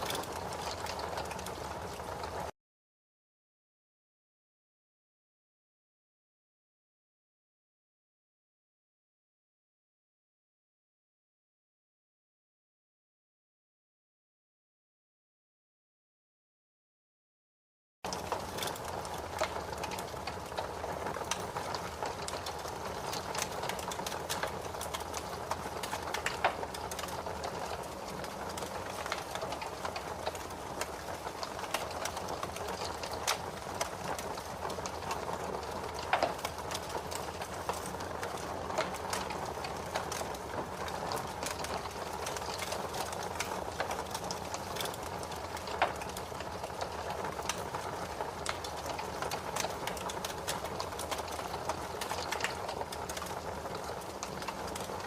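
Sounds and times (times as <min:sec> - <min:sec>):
fire crackling and popping: 0:00.0 - 0:02.5, 0:18.1 - 0:55.0.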